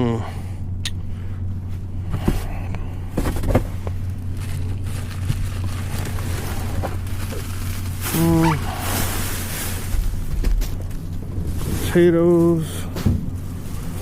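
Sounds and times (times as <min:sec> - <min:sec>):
vehicle engine idling: 0:00.0 - 0:14.0
food packages knocking and rustling: 0:03.2 - 0:11.0.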